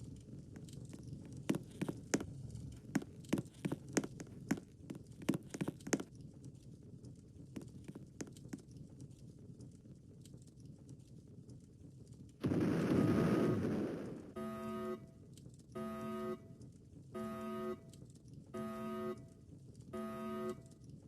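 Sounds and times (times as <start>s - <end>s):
steady low rumble: 11.5s - 14.4s.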